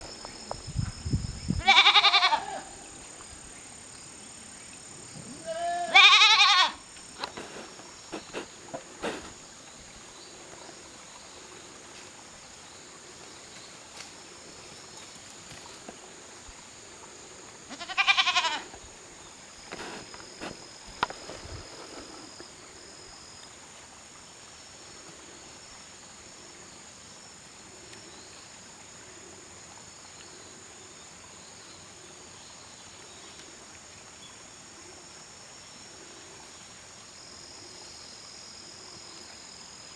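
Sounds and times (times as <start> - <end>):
goat kid bleating: 1.6 - 2.7, 5.4 - 6.8, 17.7 - 18.7.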